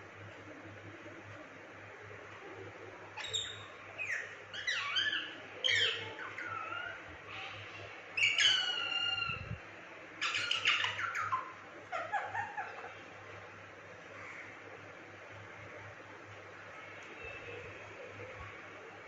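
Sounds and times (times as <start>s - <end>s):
parakeet calls: 3.2s - 9.6s, 10.2s - 13.1s.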